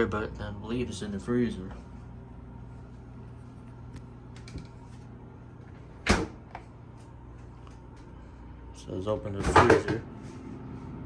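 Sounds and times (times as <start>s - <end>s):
low steady hum: 0.0s - 11.0s
refrigerator door thud: 6.0s - 6.5s, 9.4s - 10.1s.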